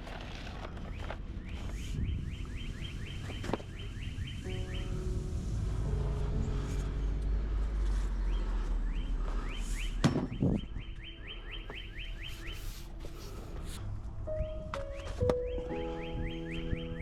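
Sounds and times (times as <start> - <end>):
bird chirping: 0.8 - 5.3, 5.9 - 13.0, 14.3 - 17.0
low rumble: 1.2 - 9.5.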